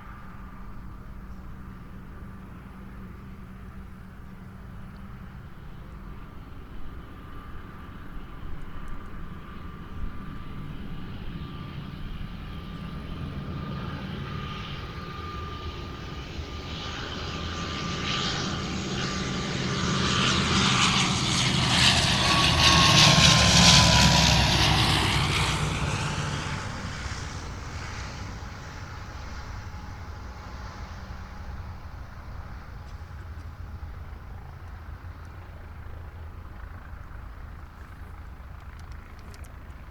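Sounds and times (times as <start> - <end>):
airplane passing low overhead: 0.0 - 39.9
high engine whine: 11.1 - 39.9.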